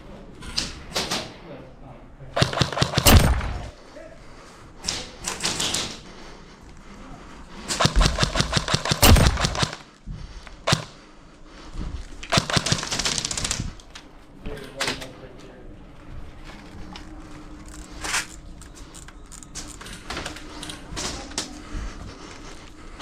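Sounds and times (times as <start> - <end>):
airsoft rifles firing bursts: 2.4 - 3.8, 7.7 - 9.9, 10.7 - 11.0, 12.3 - 13.8.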